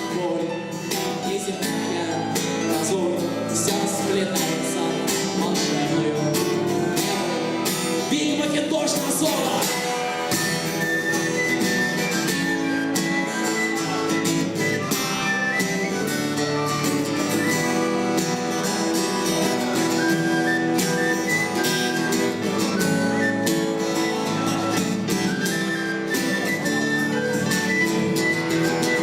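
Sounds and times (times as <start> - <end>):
strummed acoustic guitar: 0.0 - 29.0
lead melody: 9.6 - 29.0.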